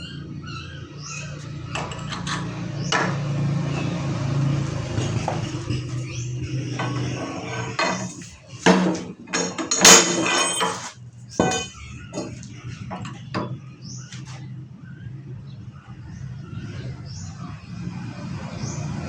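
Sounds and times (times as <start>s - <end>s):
metal clanking: 1.7s - 13.6s.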